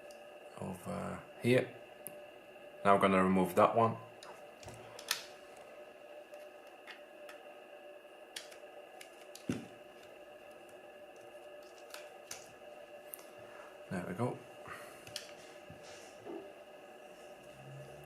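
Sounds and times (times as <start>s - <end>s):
faint steady hum: 0.0s - 18.0s.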